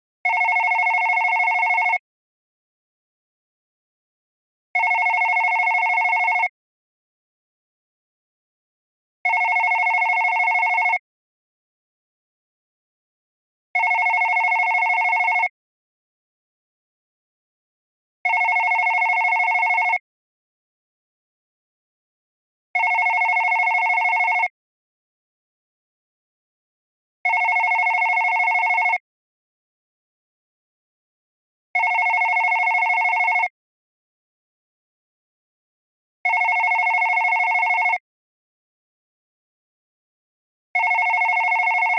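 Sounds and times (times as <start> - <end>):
telephone electronic ringing: 0.3 - 2.0, 4.8 - 6.5, 9.3 - 11.0, 13.8 - 15.5, 18.3 - 20.0, 22.8 - 24.5, 27.3 - 29.0, 31.8 - 33.5, 36.3 - 38.0, 40.8 - 41.9.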